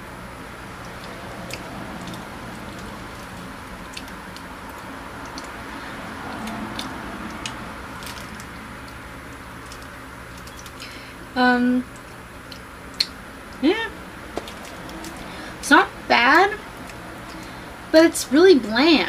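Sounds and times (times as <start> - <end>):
steady low hum: 0.0 - 19.0
person chewing with mouth clicks: 6.3 - 11.0, 11.9 - 13.2.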